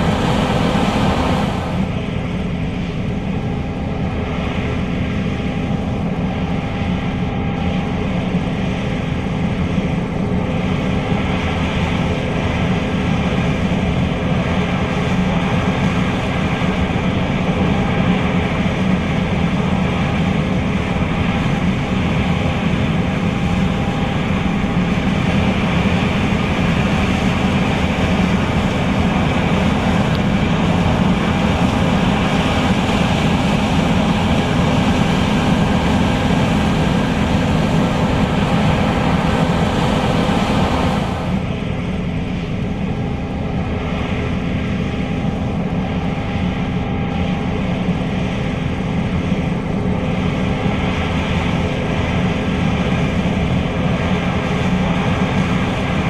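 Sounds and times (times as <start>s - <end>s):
combine harvester running: 0.0s - 5.3s, 20.7s - 51.4s.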